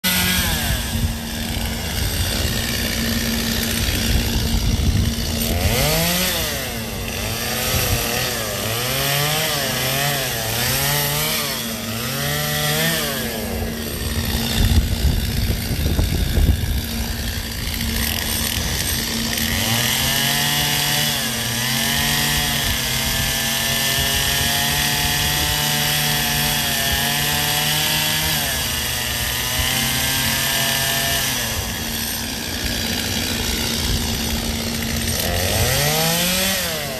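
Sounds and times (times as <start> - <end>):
chainsaw revving: 0.0 - 36.9.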